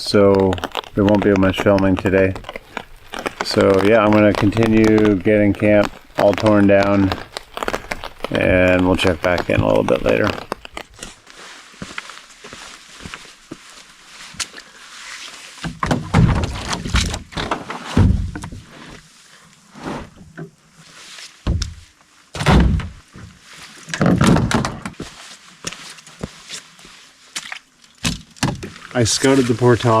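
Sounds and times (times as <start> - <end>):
rustling: 0.0 - 30.0
heavy hollow thumps: 18.0 - 18.6, 22.4 - 23.0.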